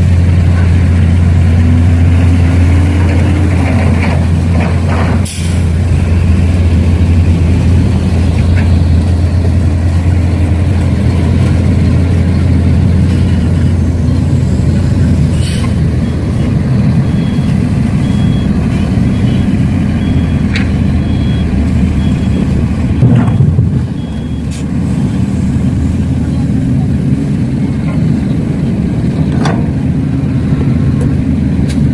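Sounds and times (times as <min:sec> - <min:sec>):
truck diesel engine running: 0:00.0 - 0:31.9
reversing beeper: 0:13.1 - 0:25.8.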